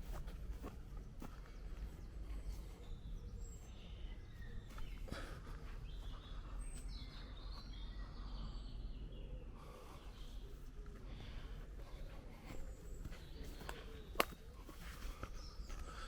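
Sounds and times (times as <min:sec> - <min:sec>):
footsteps crunching through undergrowth: 0:00.0 - 0:02.9, 0:11.7 - 0:16.0
small birds chirping: 0:00.0 - 0:16.0.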